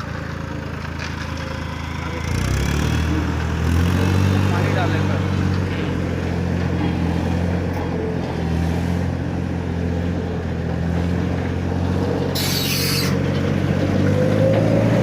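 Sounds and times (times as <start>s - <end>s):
concrete mixer engine running: 0.0s - 15.0s
short hiss: 12.4s - 13.2s.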